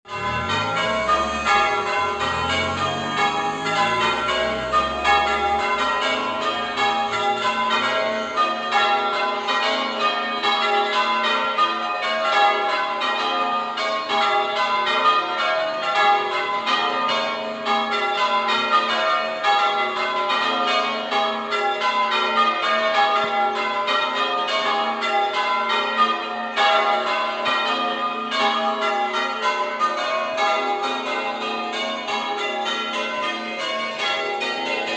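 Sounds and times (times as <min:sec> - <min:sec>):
church bells change ringing: 0:00.0 - 0:34.9.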